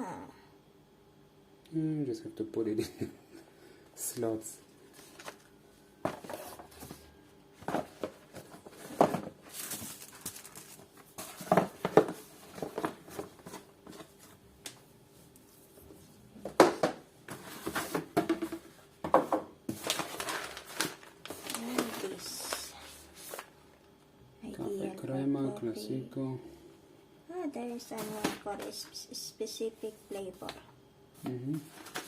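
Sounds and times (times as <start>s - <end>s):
packaging rustling and crinkling: 4.9s - 5.5s, 6.1s - 14.4s, 19.7s - 23.6s, 31.7s - 32.0s
knocks and clicks of items: 17.9s - 19.5s.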